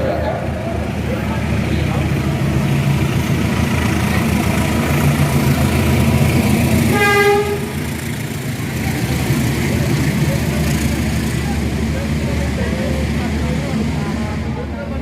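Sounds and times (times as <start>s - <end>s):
train rumbling: 0.0s - 15.0s
short train horn toot: 6.9s - 7.8s.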